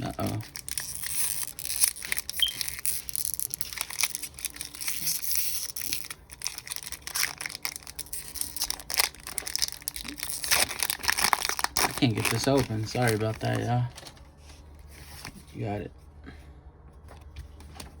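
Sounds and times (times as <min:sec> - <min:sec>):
foil wrapper crinkling and tearing: 0:00.0 - 0:14.1.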